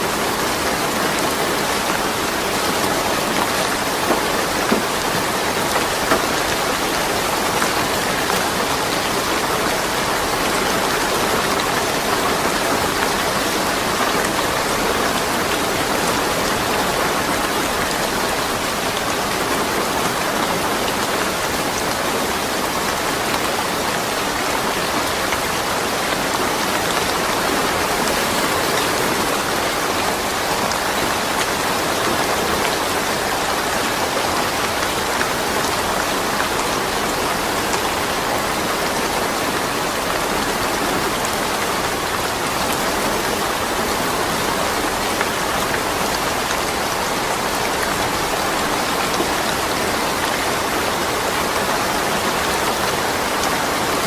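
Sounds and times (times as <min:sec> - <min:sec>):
steady rain falling: 0:00.0 - 0:54.0.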